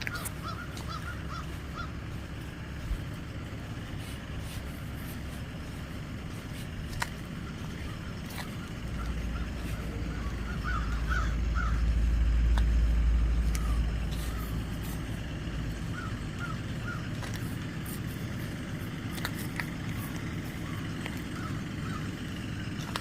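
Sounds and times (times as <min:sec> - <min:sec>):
crows cawing: 0:00.0 - 0:02.8, 0:07.1 - 0:12.3, 0:13.6 - 0:23.0
low rumble: 0:00.0 - 0:23.0.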